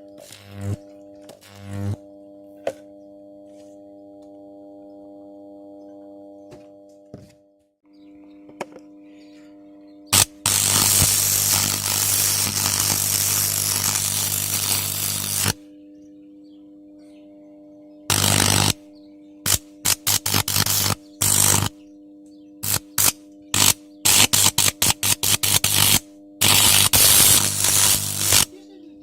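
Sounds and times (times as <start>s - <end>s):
electric arc buzzing crackle: 0.0s - 2.2s, 10.1s - 15.7s, 18.1s - 21.8s, 22.6s - 28.6s
mains hum: 0.0s - 29.0s.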